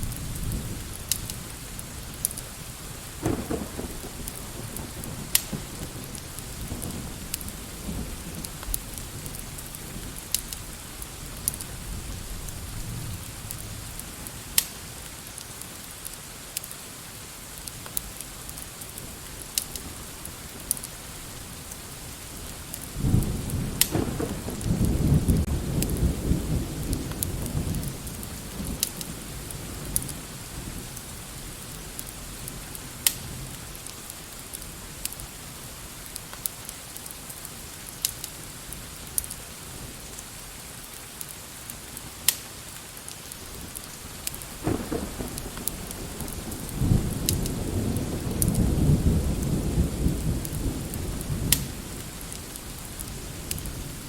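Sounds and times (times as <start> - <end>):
rolling thunder: 0.0 - 14.0, 21.2 - 32.0, 44.4 - 54.0
sharp crackles: 0.0 - 16.8, 17.5 - 26.2, 40.1 - 48.7, 50.1 - 54.0
steady rain hissing: 0.0 - 54.0.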